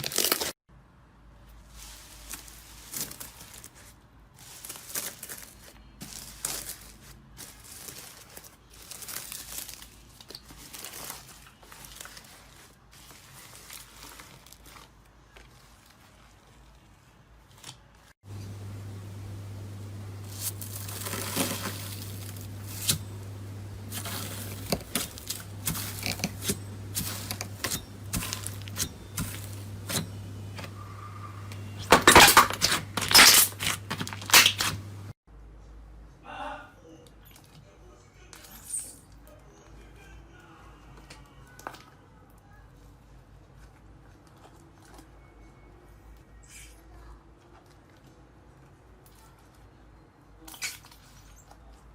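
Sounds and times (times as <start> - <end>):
soft material crackling and tearing: 0.0 - 0.6, 1.4 - 35.2
steady low hum: 18.2 - 35.1.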